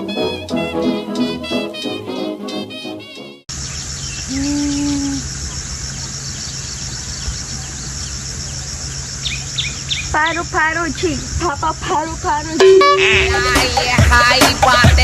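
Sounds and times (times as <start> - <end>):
bird chirps: 3.5 - 11.4
insect chorus pulsing: 3.5 - 14.3
short low tone: 12.6 - 13.6.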